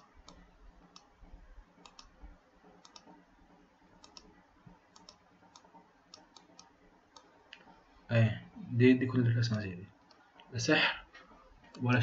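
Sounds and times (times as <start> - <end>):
faint computer mouse clicks: 0.0 - 1.1, 1.8 - 2.2, 2.8 - 3.2, 4.0 - 4.3, 4.9 - 7.7.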